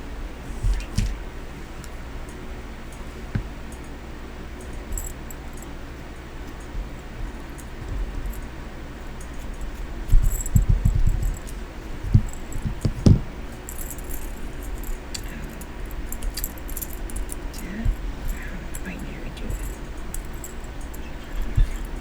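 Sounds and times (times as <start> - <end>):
dull knocks on hard surface: 12.1 - 13.4
small metal pieces jangling: 13.5 - 22.0.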